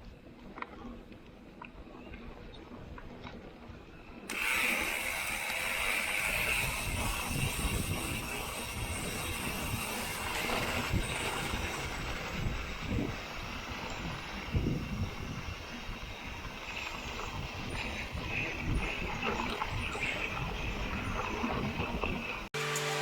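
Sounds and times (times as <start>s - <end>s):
wind on microphone: 0.0s - 22.5s
high buzz of freehub coasting: 0.0s - 23.0s
bike tyre rumble: 4.3s - 22.5s.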